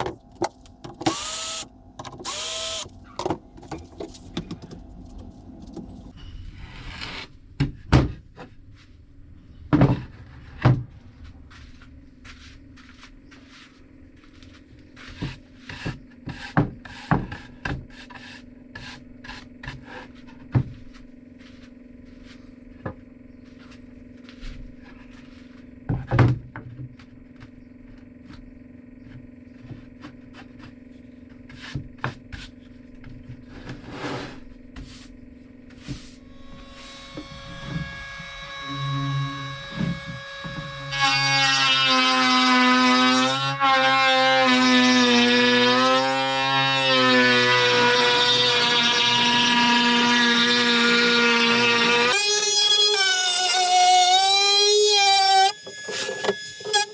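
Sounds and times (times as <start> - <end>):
wood scraping: 0.0 - 7.2, 33.4 - 35.1.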